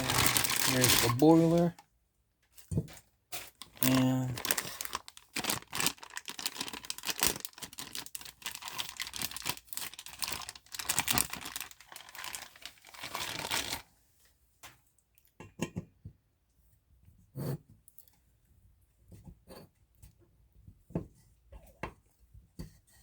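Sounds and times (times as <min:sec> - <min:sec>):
packaging wrap crinkling: 0:00.0 - 0:01.8, 0:03.4 - 0:13.8.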